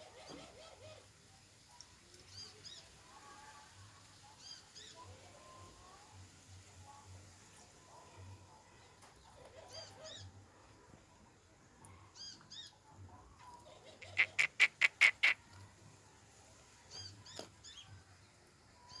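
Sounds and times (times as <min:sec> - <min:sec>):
birds chirping: 0:13.5 - 0:15.4.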